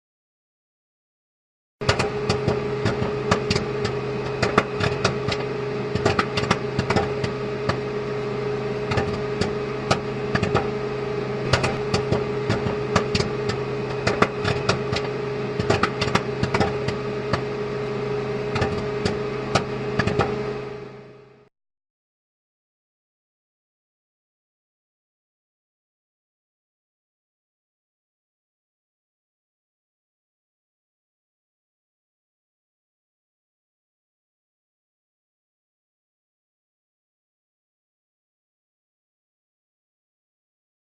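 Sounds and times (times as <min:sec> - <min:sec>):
popcorn popping: 0:01.8 - 0:07.9, 0:08.9 - 0:10.8, 0:11.4 - 0:17.5, 0:18.5 - 0:20.4
machine motor hum: 0:01.8 - 0:21.5.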